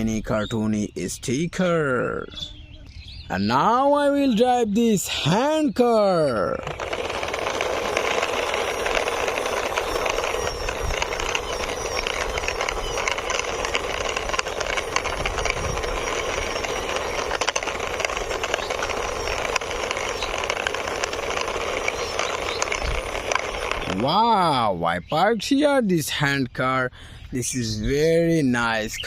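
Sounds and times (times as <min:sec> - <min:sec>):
toy car wheels rattling on wall: 0:06.1 - 0:24.7.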